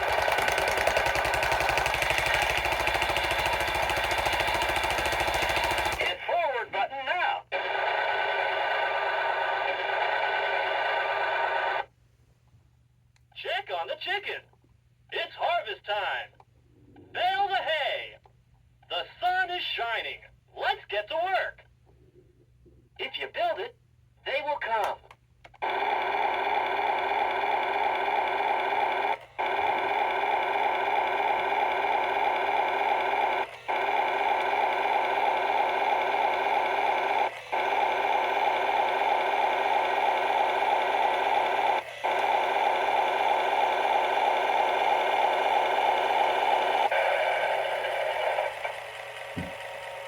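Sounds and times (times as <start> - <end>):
toy electronic engine rumble: 0.0 - 6.3, 25.5 - 50.0.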